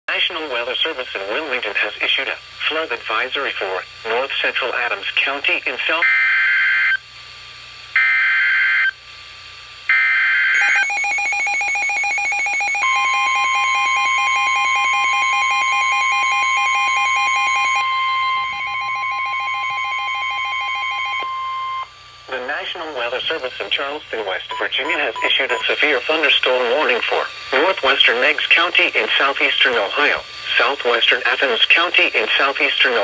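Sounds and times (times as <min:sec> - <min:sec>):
steady warning alarm tone: 0:09.9 - 0:33.0
radio alarm beeping rapidly: 0:10.0 - 0:21.9, 0:24.5 - 0:32.7
screechy digital data bursts: 0:24.5 - 0:33.0.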